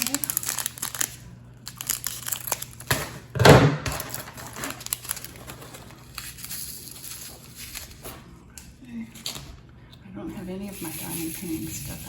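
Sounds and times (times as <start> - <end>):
plastic packaging crinkling: 0.0 - 8.3.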